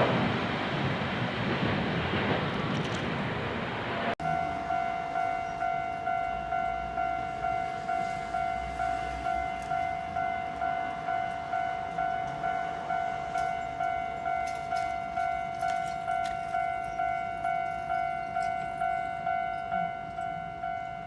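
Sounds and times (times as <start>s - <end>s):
railroad crossing bell ringing: 4.2s - 21.0s.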